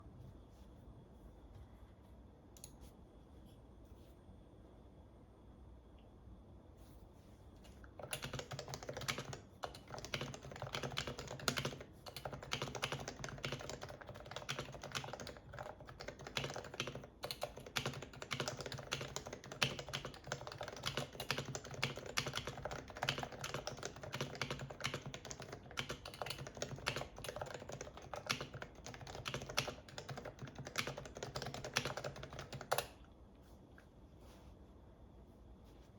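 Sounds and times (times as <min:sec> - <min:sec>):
fast typing on keyboard: 0:08.0 - 0:32.9.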